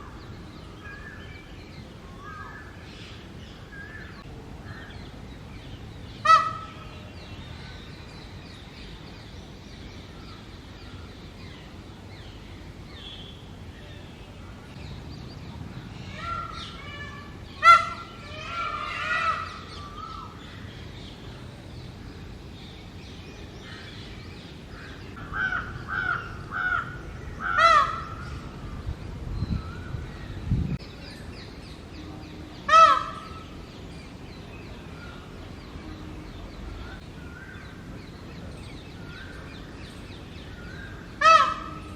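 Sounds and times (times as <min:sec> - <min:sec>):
peacock calling: 0:06.1 - 0:07.8, 0:16.0 - 0:20.7, 0:24.7 - 0:28.8, 0:32.0 - 0:33.7, 0:40.4 - 0:41.9.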